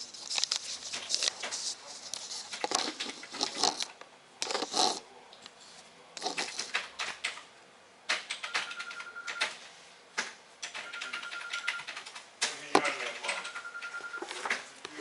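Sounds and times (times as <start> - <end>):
clicking and rustling handling noise: 0.0 - 5.6.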